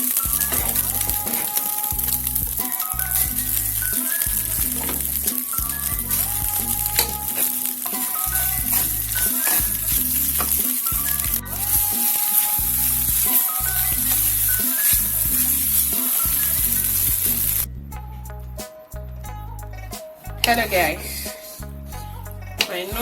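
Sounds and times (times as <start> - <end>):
noodles sizzling in a pan: 0.0 - 17.7
background music with bass line: 0.0 - 23.0.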